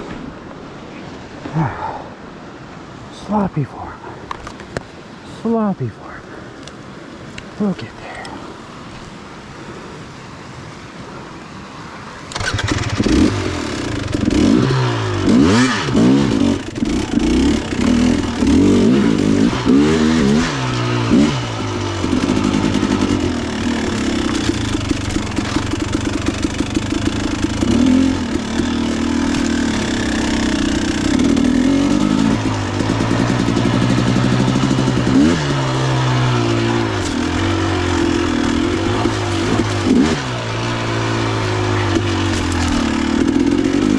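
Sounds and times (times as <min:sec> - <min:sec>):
dirt bike engine revving: 0:12.3 - 0:43.9.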